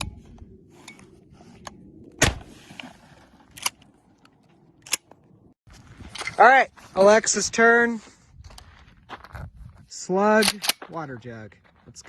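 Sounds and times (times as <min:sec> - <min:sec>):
shotgun shot: 0:02.2 - 0:02.5.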